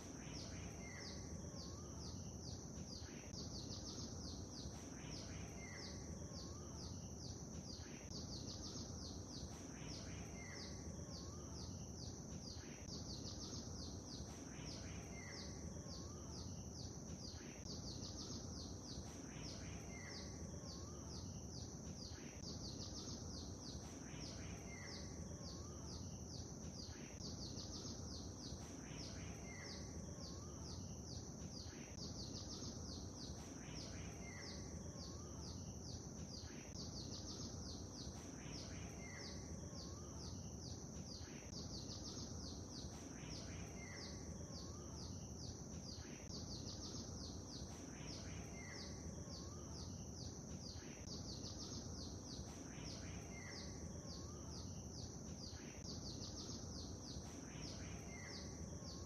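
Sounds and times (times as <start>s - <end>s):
background hiss: 0.0s - 59.0s
songbirds chirping and twittering: 0.0s - 59.0s.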